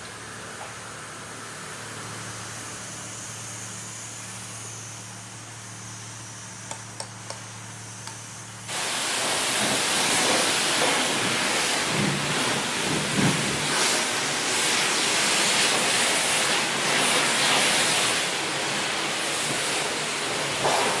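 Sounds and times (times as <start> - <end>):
low machine hum: 0.0 - 8.8
high-pressure water spraying: 8.7 - 21.0.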